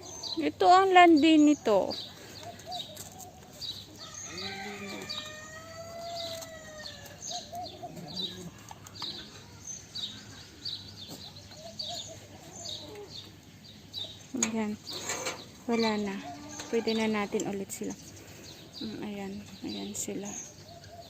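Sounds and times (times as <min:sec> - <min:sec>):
small birds chirping: 0:00.0 - 0:21.0
rooster crowing: 0:04.0 - 0:07.3.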